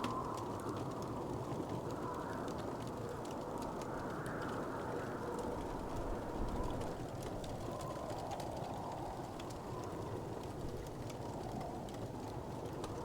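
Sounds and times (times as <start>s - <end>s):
wood fire crackling and popping: 0.0s - 4.6s, 6.8s - 13.0s.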